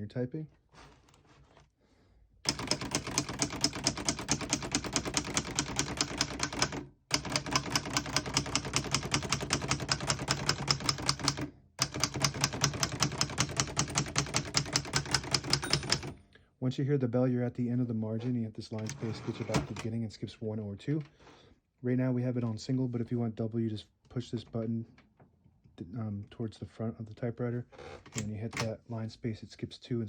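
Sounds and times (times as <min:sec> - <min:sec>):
manual typewriter typing: 0:02.4 - 0:16.2, 0:18.8 - 0:19.9, 0:28.1 - 0:28.7.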